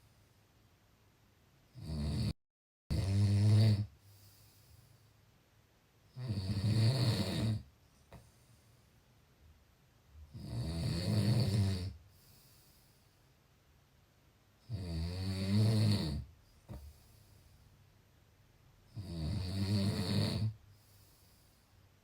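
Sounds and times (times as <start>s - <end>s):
deep rough snoring: 1.8s - 3.9s, 6.2s - 7.6s, 10.3s - 12.0s, 14.7s - 16.3s, 18.9s - 20.6s
quiet breathing: 3.8s - 6.2s, 7.5s - 9.3s, 11.8s - 13.8s, 16.2s - 19.0s, 19.8s - 22.0s.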